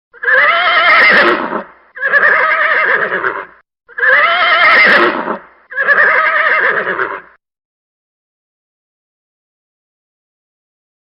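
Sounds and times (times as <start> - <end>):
horse whinnying: 0.2 - 7.4.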